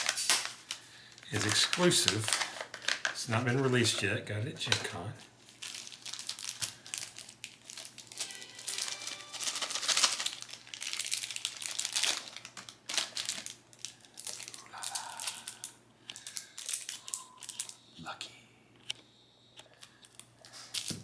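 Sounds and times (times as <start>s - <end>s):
packaging crinkling: 0.0s - 17.8s, 19.7s - 21.0s.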